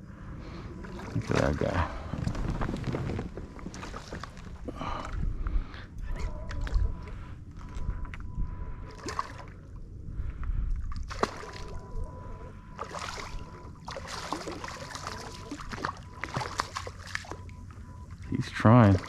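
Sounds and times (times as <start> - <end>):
water sloshing against hull: 0.0 - 19.0
fish splashing at surface: 12.8 - 17.4.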